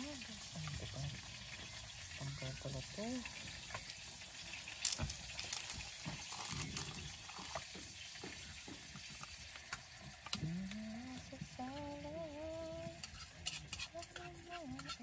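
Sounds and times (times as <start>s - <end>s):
food sizzling in frying pan: 0.0s - 15.0s.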